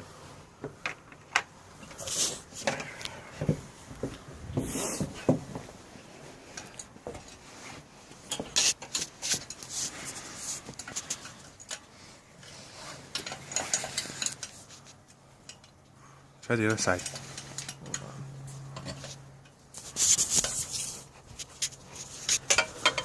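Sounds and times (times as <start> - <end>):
hand tools clinking and knocking: 8.1 - 19.6, 20.2 - 23.0.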